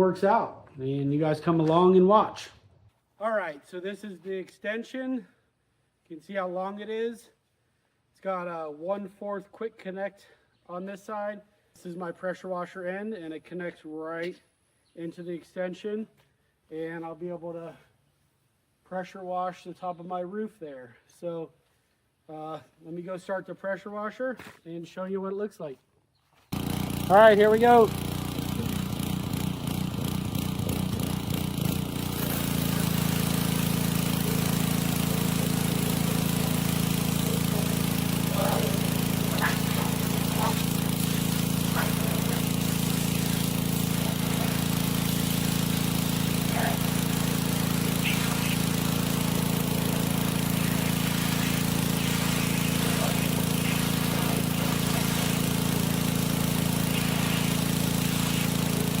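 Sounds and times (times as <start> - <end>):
small gasoline engine running: 26.5 - 59.0.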